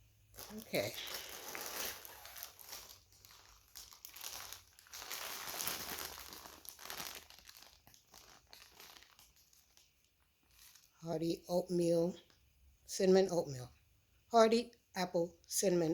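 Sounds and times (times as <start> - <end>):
plastic packaging crinkling: 0.3 - 11.0.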